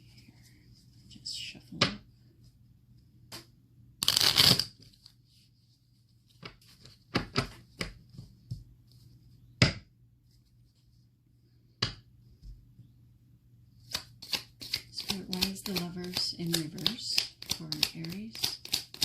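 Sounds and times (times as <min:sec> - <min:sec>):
cards being shuffled: 0:03.3 - 0:05.3, 0:13.8 - 0:19.0.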